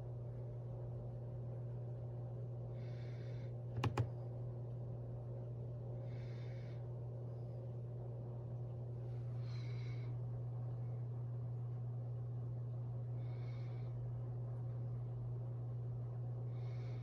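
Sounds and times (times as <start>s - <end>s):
low electrical hum: 0.0s - 17.0s
mechanical keyboard key clicks: 3.8s - 4.1s.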